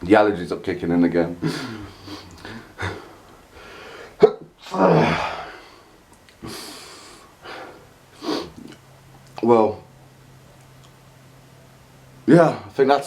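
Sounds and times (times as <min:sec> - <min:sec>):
man sneezing: 0:01.4 - 0:03.1, 0:04.2 - 0:05.6
hissing breath: 0:01.4 - 0:04.2, 0:05.0 - 0:08.8.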